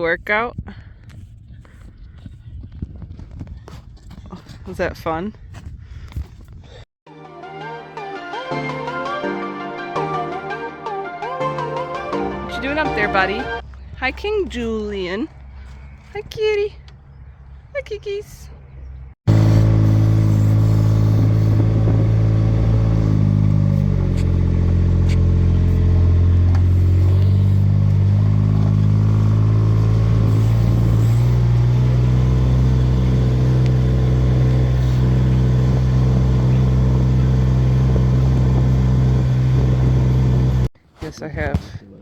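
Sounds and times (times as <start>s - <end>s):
engine running: 19.3s - 40.7s.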